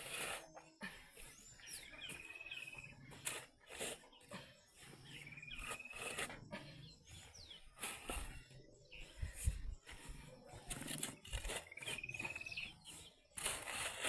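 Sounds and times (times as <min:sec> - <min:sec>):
bird whistle and trill: 0:05.2 - 0:06.3, 0:11.0 - 0:13.0.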